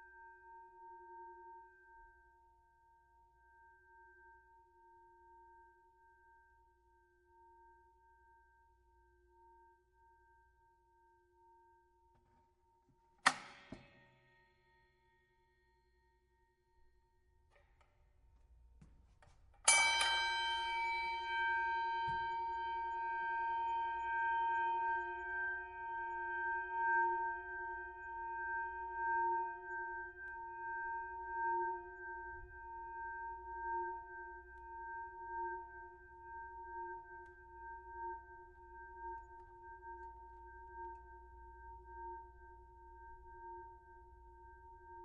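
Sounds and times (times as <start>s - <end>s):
boxing bell ringing: 19.7s - 22.3s.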